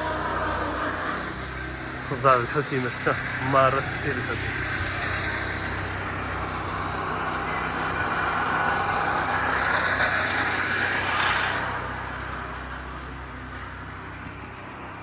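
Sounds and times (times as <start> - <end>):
steady low hum: 0.0 - 15.0
vehicle passing: 0.0 - 15.0.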